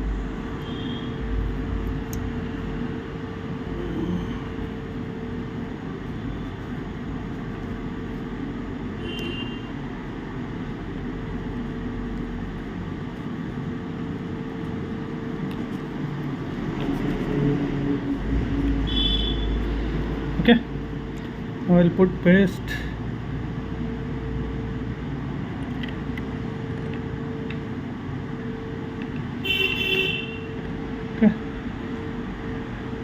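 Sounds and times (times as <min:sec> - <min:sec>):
constant humming tone: 0:00.0 - 0:33.0
machine rushing noise: 0:15.8 - 0:20.4.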